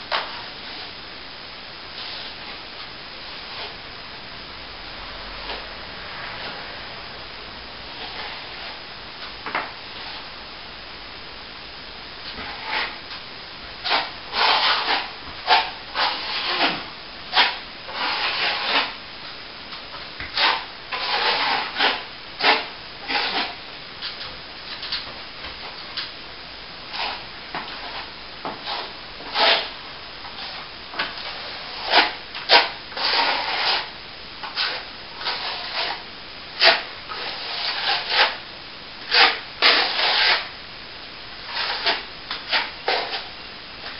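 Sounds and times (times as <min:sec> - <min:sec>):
sanding plaster wall by hand: 0:12.3 - 0:13.0, 0:13.8 - 0:19.0, 0:20.2 - 0:23.6, 0:26.9 - 0:36.0, 0:36.6 - 0:38.4, 0:39.1 - 0:40.5, 0:41.5 - 0:43.4.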